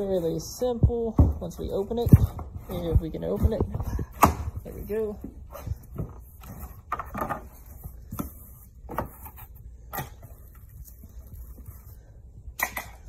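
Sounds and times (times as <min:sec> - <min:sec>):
cardboard rustling and scraping: 0:00.0 - 0:12.1.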